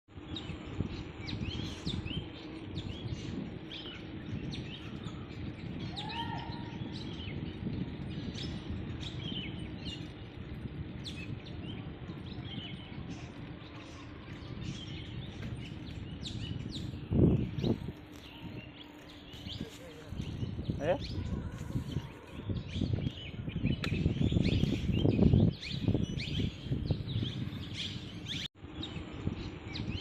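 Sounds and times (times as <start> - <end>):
small birds chirping and trilling: 0.1 - 30.0.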